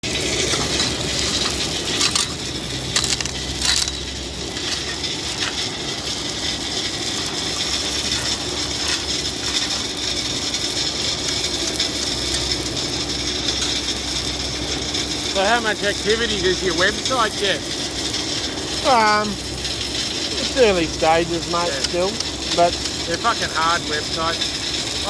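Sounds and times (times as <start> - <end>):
loose rock crunching: 0.1 - 15.4.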